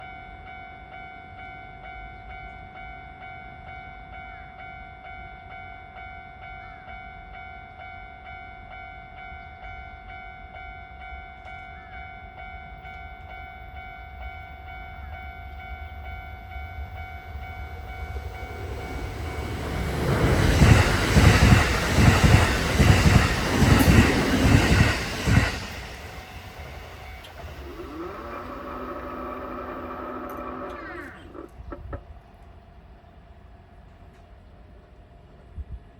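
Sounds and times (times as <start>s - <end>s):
level crossing warning bell: 0.0s - 31.5s
electric train passing: 8.6s - 34.7s
train wheels clacking on rails: 16.5s - 32.1s.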